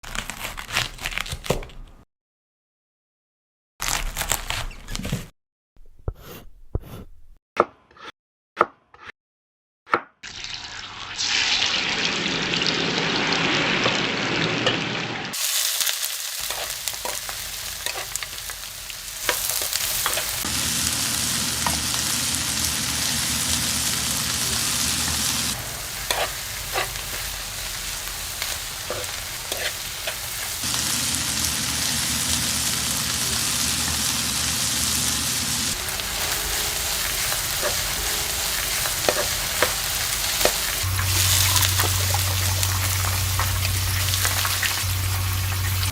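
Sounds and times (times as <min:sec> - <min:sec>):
food sizzling in a frying pan: 0:10.3 - 0:45.9.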